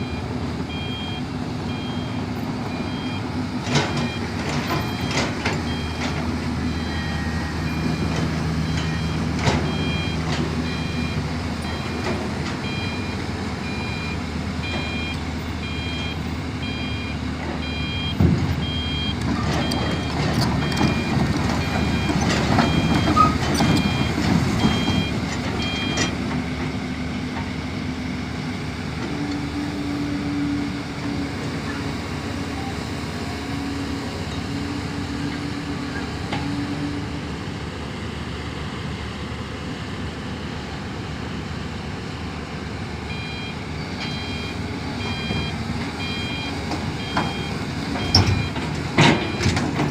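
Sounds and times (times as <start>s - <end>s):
travel alarm beeping: 0.0s - 3.2s, 6.7s - 26.1s, 43.1s - 49.6s
excavator diesel engine running: 0.0s - 49.9s.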